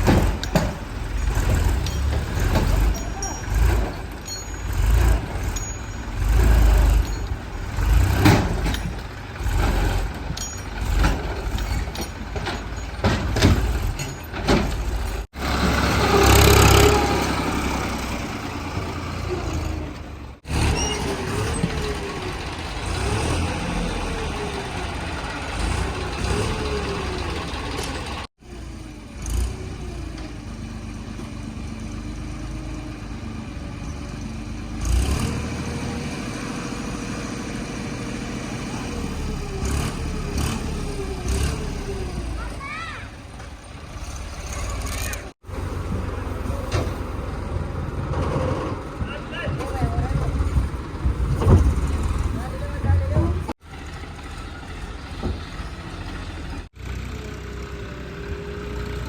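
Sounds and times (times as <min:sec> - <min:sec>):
knocks and clanks: 0:00.0 - 0:15.3, 0:47.9 - 0:53.6
diesel engines revving: 0:00.0 - 0:59.0.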